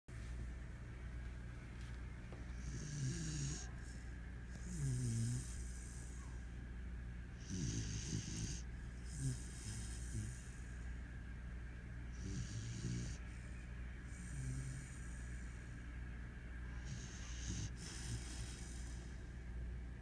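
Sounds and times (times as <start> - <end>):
dog snoring: 2.5 - 6.4, 7.4 - 11.0, 12.1 - 15.8, 16.8 - 19.4.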